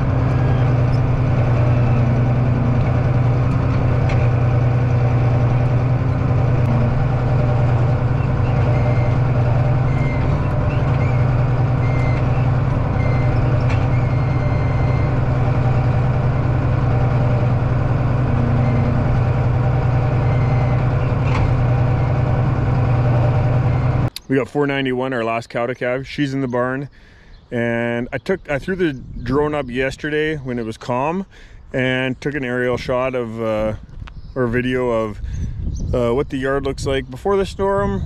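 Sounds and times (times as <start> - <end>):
heavy machine engine running: 0.0 - 24.2
short high tones: 18.0 - 21.2.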